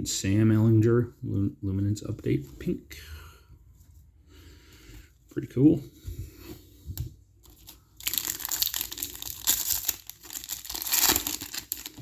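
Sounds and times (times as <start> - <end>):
foil wrapper crinkling and tearing: 7.4 - 12.0.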